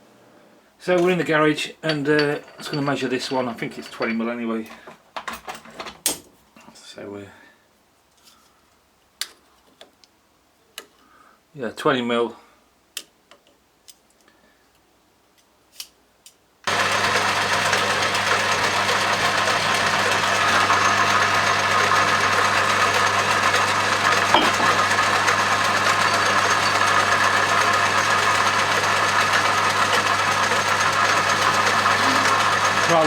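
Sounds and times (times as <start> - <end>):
metal lathe humming: 16.7 - 33.0.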